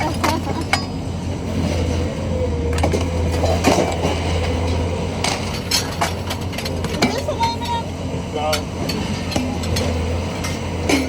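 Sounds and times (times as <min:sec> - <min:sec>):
low engine hum: 0:00.0 - 0:11.0
scrap metal clattering: 0:08.5 - 0:11.0.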